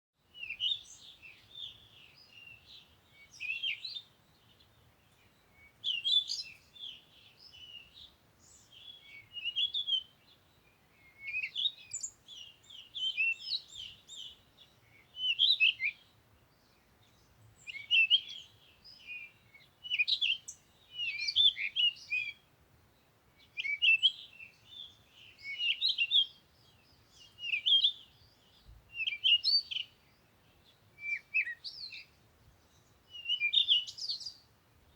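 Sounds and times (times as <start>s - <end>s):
songbirds chirping and warbling: 0.2s - 34.9s.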